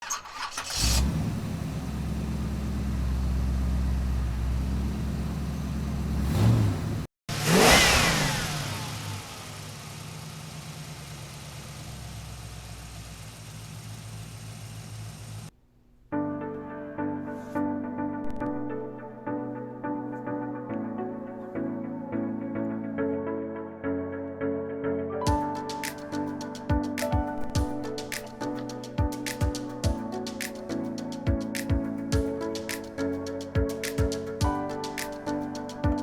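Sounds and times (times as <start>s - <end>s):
engine idling and revving: 0.5s - 15.5s.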